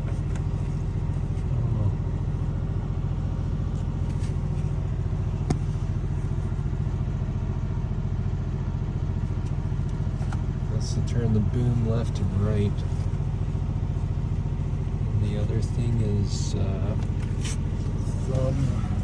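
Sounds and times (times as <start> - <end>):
diesel engine idling: 0.0 - 19.0.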